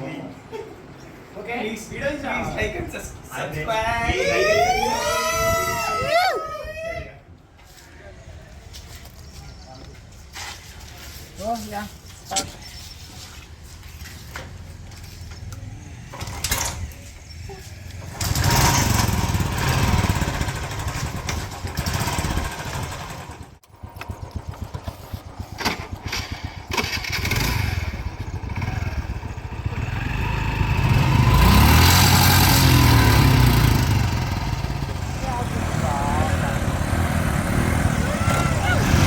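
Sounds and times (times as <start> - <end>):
small engine running: 18.1 - 39.0.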